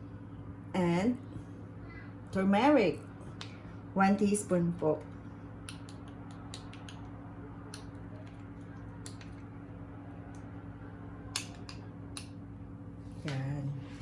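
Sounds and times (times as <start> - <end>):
steady low hum: 0.0 - 14.0
teaspoon clicking and tapping: 5.0 - 7.1, 7.8 - 9.4.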